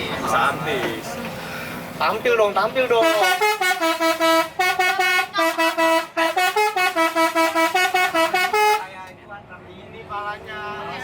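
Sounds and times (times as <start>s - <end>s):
multi-tone bus horn tune: 3.0s - 9.0s.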